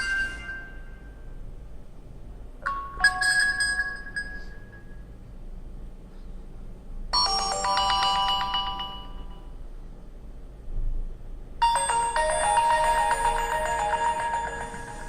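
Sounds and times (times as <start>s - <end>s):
phone ringtone melody: 7.2s - 9.5s, 11.6s - 15.0s.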